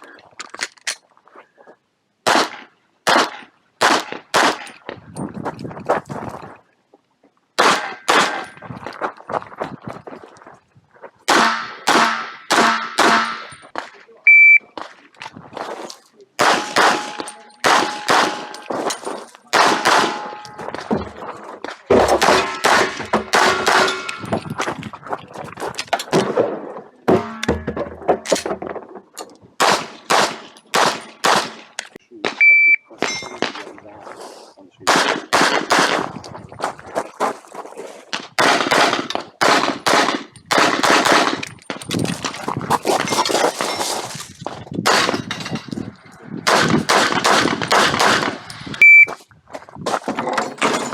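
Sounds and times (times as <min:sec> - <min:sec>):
pistol shots: 0:02.3 - 0:04.8, 0:07.6 - 0:08.5, 0:11.3 - 0:13.5, 0:16.4 - 0:18.8, 0:19.5 - 0:20.4, 0:22.0 - 0:24.2, 0:29.6 - 0:32.4, 0:34.9 - 0:36.1, 0:38.4 - 0:41.5, 0:44.9 - 0:45.3, 0:46.4 - 0:48.5
short electronic beep: 0:14.3 - 0:14.7, 0:32.4 - 0:32.9, 0:48.8 - 0:49.1
steel targets ringing: 0:16.6 - 0:18.8, 0:19.7 - 0:20.8, 0:27.1 - 0:27.7.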